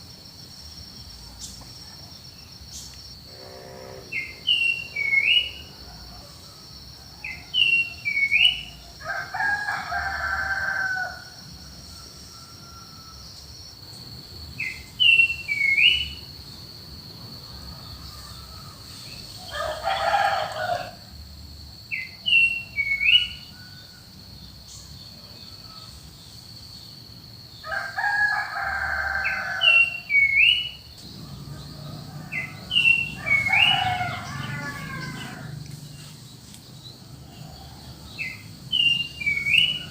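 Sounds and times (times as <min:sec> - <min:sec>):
high insect drone: 0:00.0 - 0:39.9
roosters crowing: 0:03.3 - 0:13.4, 0:17.4 - 0:21.2, 0:27.5 - 0:36.2, 0:36.8 - 0:39.9.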